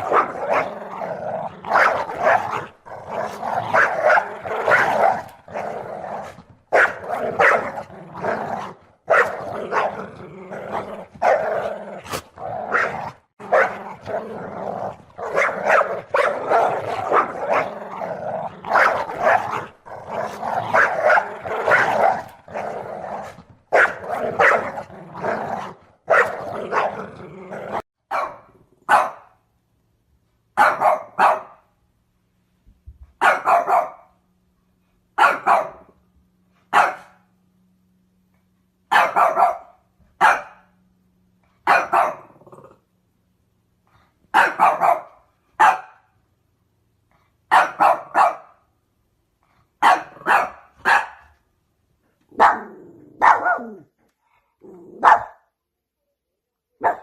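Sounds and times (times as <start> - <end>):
dog barking: 0.0 - 0.8, 1.7 - 2.7, 3.7 - 5.2, 6.7 - 7.8, 9.1 - 10.0, 12.7 - 13.8, 15.2 - 17.8, 23.7 - 24.8, 26.1 - 27.0, 28.1 - 29.4, 30.6 - 31.6, 33.2 - 34.1, 35.2 - 35.9, 36.7 - 37.2, 38.9 - 40.7, 41.6 - 42.3, 44.4 - 46.1, 47.5 - 48.6, 49.8 - 51.3, 52.3 - 53.8, 55.0 - 55.4, 56.8 - 57.0.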